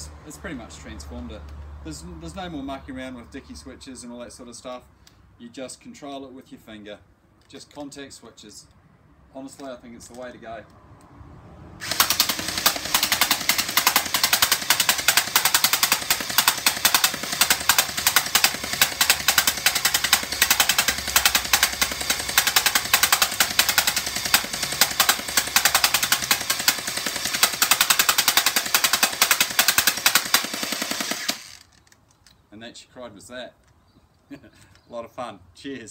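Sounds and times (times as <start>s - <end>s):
gel blaster firing full auto: 11.8s - 31.8s.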